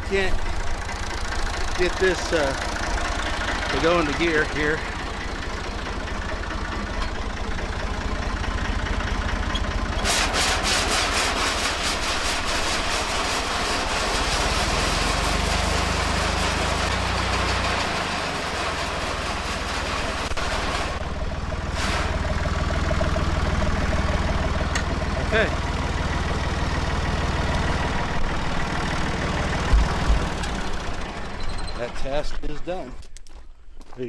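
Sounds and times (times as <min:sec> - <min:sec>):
tractor engine: 0:00.0 - 0:33.2
fast mechanical rattle: 0:00.6 - 0:21.1.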